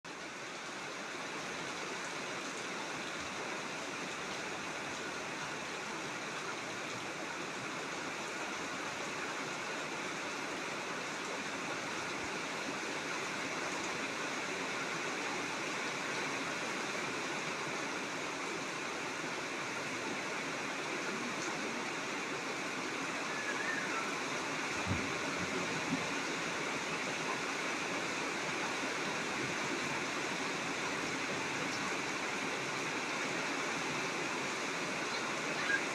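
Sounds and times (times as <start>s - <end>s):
heavy rain pouring: 0.1s - 35.9s.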